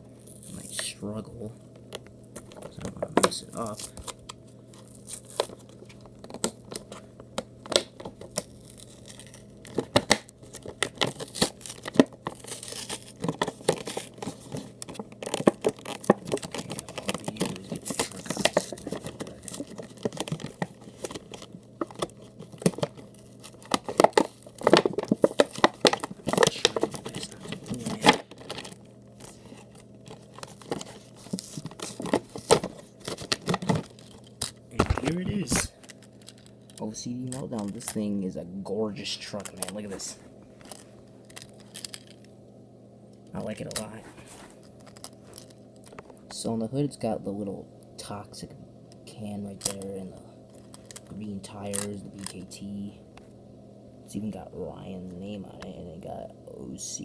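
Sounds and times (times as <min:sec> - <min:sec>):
packaging tearing and crinkling: 0:02.4 - 0:07.0, 0:07.6 - 0:38.0.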